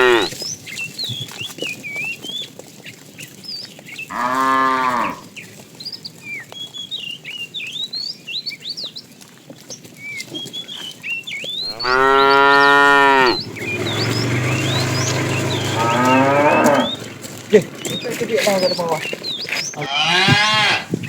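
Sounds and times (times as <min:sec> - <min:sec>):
cows mooing: 0:00.0 - 0:00.4, 0:04.1 - 0:05.3, 0:11.6 - 0:21.0.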